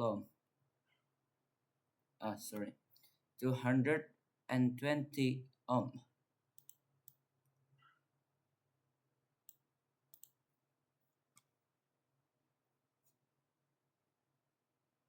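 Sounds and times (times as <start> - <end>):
computer mouse clicks: 6.6 - 7.2, 9.5 - 10.4.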